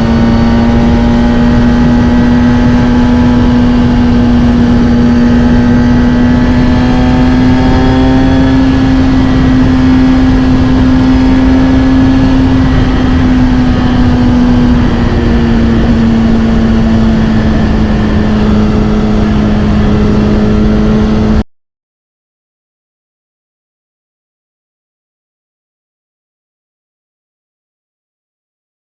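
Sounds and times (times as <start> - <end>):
motorcycle engine running: 0.0 - 21.4.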